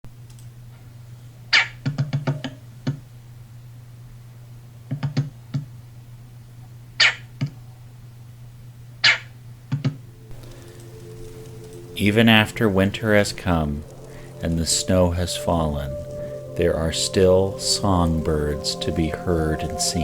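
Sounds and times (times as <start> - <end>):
steady low hum: 10.0 - 20.0.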